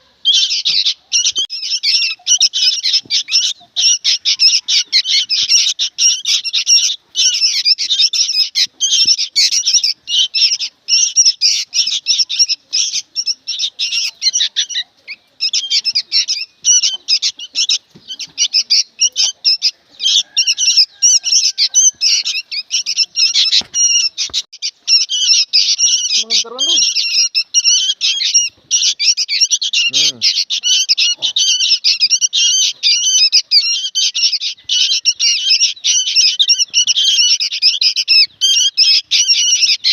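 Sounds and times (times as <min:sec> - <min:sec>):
birds calling high-pitched: 0:00.0 - 0:39.9.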